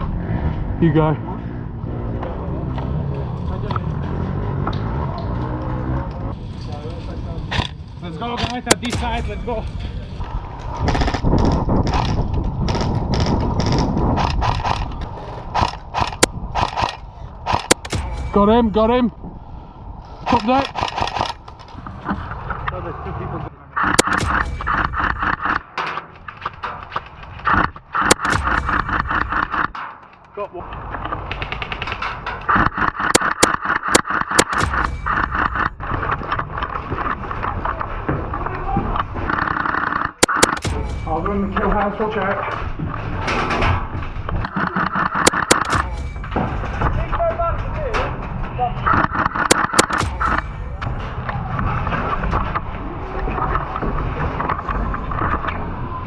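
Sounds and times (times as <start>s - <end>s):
gearbox clattering: 6.9s - 19.0s, 20.2s - 22.8s, 23.8s - 55.6s
sharp single cracks: 8.4s - 18.4s, 20.2s - 22.2s, 23.8s - 30.4s, 31.0s - 36.1s, 39.2s - 41.1s, 44.3s - 46.8s, 48.9s - 50.9s
airsoft gun full-auto clatter: 10.9s - 17.9s.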